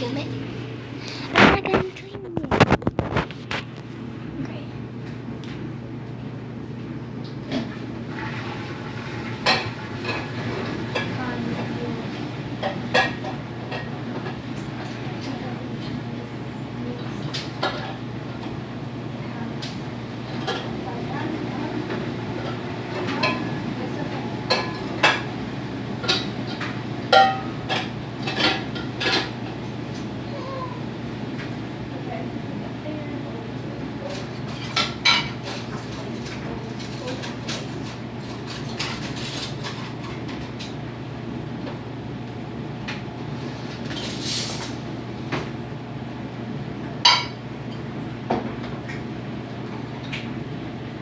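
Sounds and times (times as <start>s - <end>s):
steady low hum: 0.0s - 51.0s
dishes clinking: 34.5s - 37.7s.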